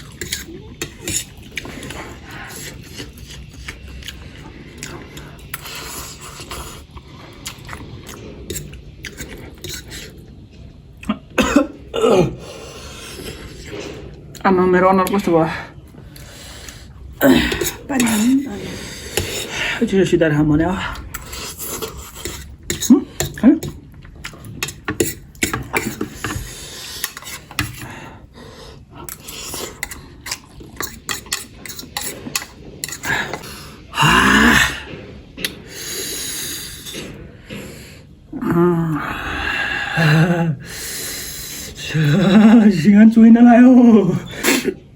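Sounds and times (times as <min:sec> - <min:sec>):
eating sounds with clicks and smacks: 0:00.0 - 0:11.4, 0:20.9 - 0:38.1
loud coughs: 0:11.1 - 0:12.4, 0:44.3 - 0:44.8.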